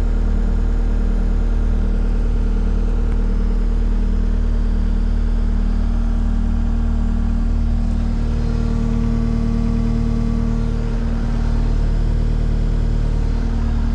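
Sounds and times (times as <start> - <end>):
diesel engine running steadily: 0.0 - 13.9.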